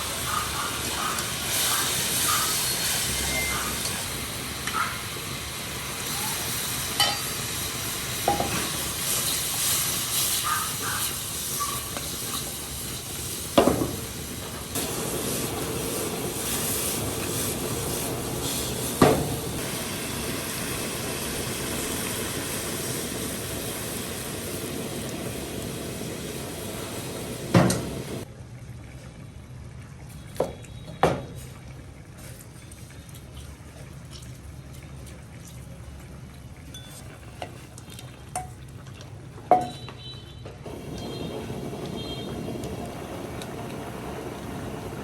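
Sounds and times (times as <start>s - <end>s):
food sizzling in hot oil: 0.0s - 28.3s, 40.7s - 45.0s.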